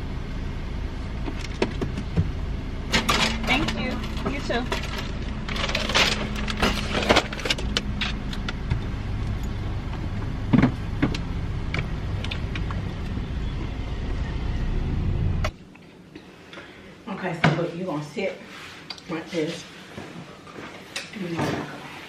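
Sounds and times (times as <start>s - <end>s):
car engine running: 0.0s - 15.6s.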